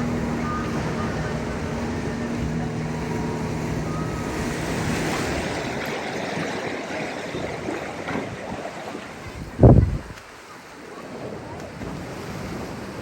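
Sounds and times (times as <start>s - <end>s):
wind on microphone: 0.0s - 10.3s
boat engine humming: 0.0s - 13.0s
sea waves: 0.0s - 13.0s.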